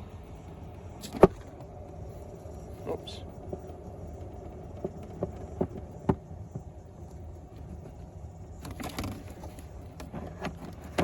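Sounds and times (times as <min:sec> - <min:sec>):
heater fan humming: 0:00.0 - 0:11.0
casing parts clicking and knocking: 0:03.2 - 0:11.0.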